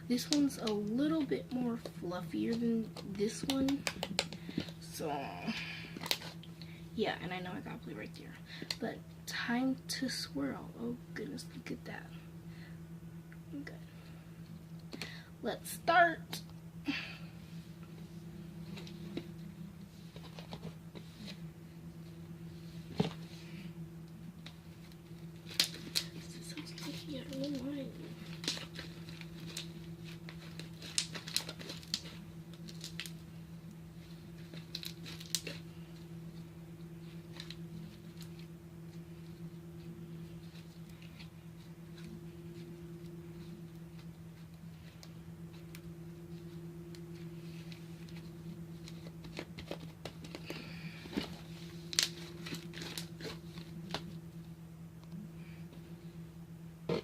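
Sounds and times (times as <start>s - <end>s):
steady low hum: 0.0s - 57.0s
slime crackling and popping: 28.3s - 33.2s, 34.5s - 35.6s.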